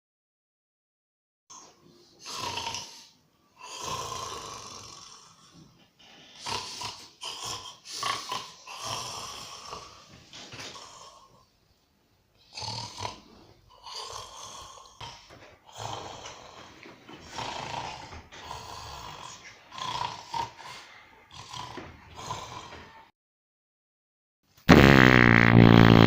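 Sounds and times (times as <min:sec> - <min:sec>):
man snoring: 0:02.2 - 0:05.6, 0:06.4 - 0:10.1, 0:12.5 - 0:16.6, 0:17.2 - 0:23.0, 0:24.7 - 0:26.0.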